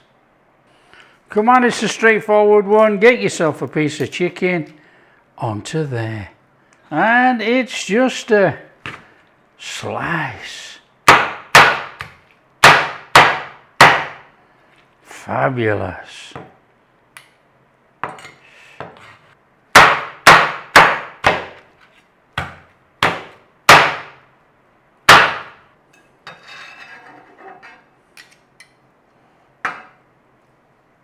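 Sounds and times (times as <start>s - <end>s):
knife chopping on board: 8.9s - 9.1s, 11.1s - 14.2s, 19.8s - 21.7s, 22.4s - 24.2s, 25.1s - 25.6s.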